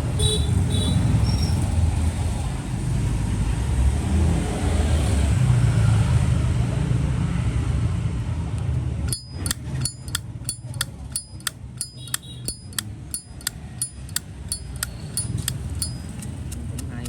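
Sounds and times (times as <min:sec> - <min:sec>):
lighter lid clicking open and shut: 0:09.1 - 0:17.0.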